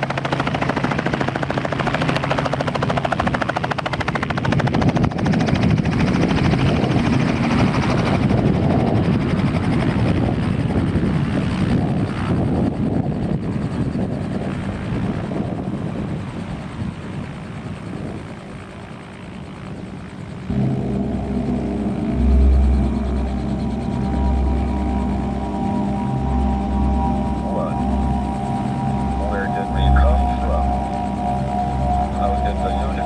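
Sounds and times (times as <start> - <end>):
helicopter rotor chopping: 0.0 - 33.0
low engine drone: 20.2 - 33.0.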